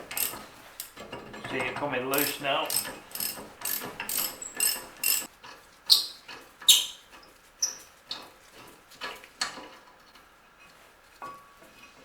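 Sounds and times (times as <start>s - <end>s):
ratchet clicking: 0.0s - 1.0s, 2.2s - 5.3s.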